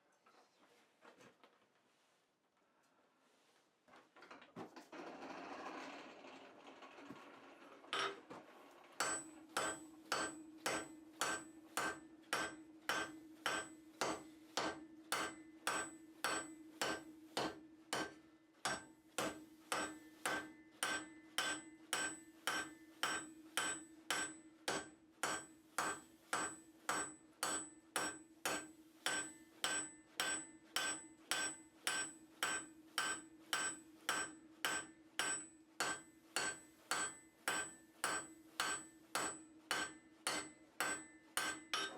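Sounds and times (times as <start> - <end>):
hammer striking steel on anvil: 9.0 - 41.9.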